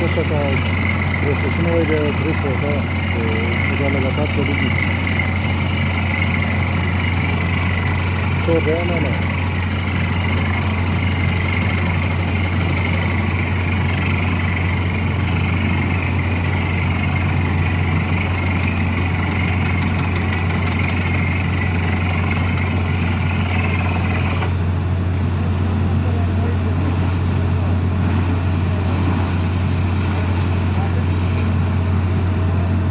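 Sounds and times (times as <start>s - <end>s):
drilling rig engine humming: 0.0s - 32.9s.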